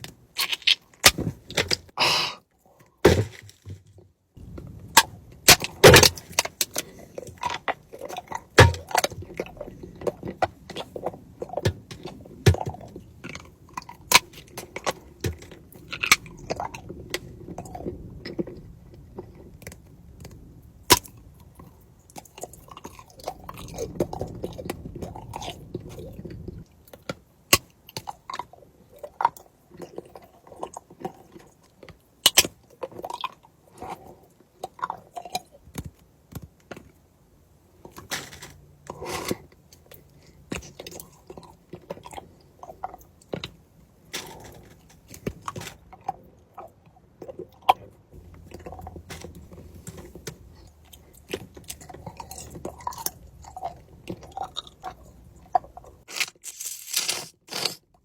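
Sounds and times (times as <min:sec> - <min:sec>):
candy biting and chewing: 0:00.3 - 0:01.2, 0:44.2 - 0:58.0.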